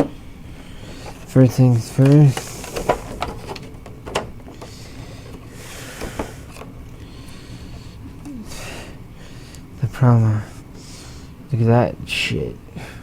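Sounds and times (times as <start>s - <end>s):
packaging rustling and crinkling: 0.8s - 5.4s.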